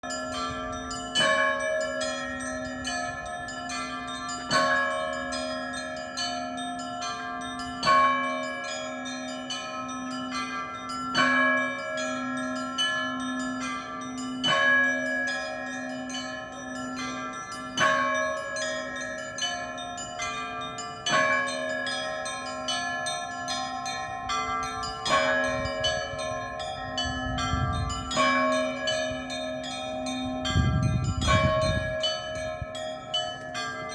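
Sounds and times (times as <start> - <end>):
small bells chiming: 0.0 - 33.9
loud bell strikes: 21.1 - 33.9.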